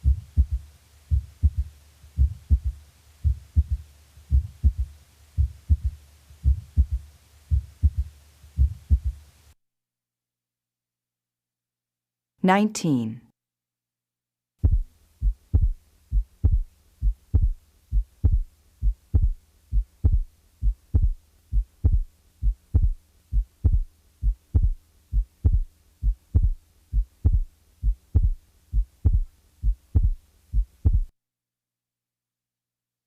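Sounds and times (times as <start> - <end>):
heartbeat thumps: 0.0 - 9.2, 14.6 - 31.1
faint steady hum: 0.0 - 9.6, 14.6 - 31.1.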